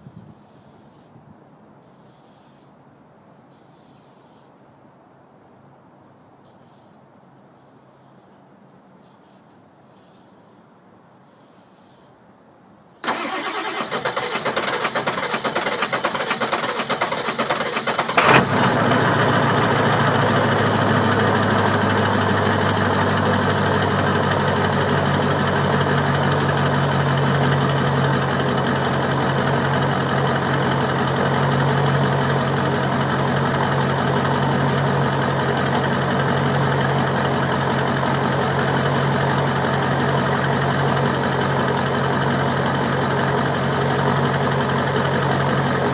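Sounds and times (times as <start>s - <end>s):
car engine cranking and idling: 13.0s - 45.9s.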